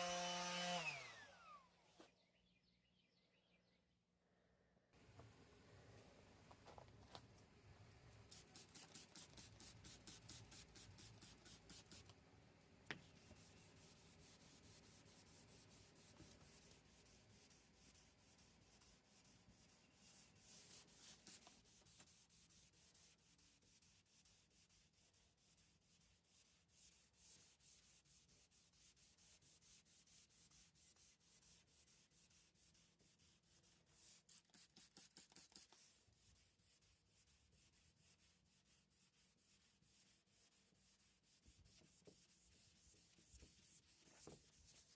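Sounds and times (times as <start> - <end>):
sandpaper scraping by hand: 8.3 - 12.1, 13.0 - 44.9.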